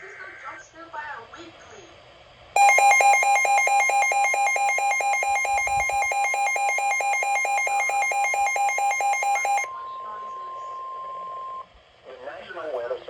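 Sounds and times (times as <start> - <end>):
rapidly pulsing alert beeps: 2.6 - 9.7
steady warning tone: 2.6 - 11.7.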